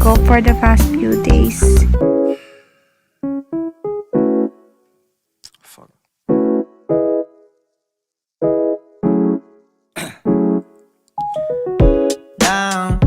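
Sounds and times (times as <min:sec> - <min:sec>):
keyboard playing detached chords: 0:00.0 - 0:02.4, 0:03.2 - 0:04.8, 0:06.3 - 0:07.4, 0:08.4 - 0:09.6, 0:10.3 - 0:12.4.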